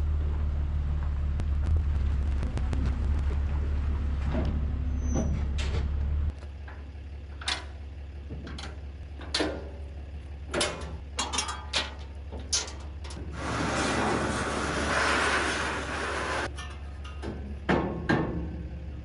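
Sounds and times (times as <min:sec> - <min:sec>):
low engine hum: 0:00.0 - 0:19.0
metal clanks and knocks: 0:04.2 - 0:14.4, 0:16.2 - 0:19.0.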